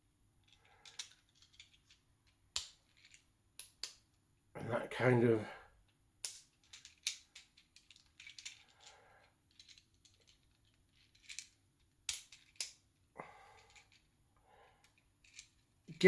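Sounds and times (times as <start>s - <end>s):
plastic toy parts clicking: 0.4s - 4.2s, 6.2s - 8.9s, 9.5s - 12.9s, 14.8s - 16.0s.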